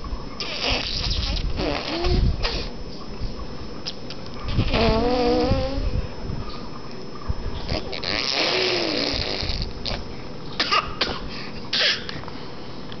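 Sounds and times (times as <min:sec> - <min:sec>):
baby blowing raspberries: 0:00.4 - 0:02.8, 0:04.5 - 0:05.9, 0:07.7 - 0:10.0.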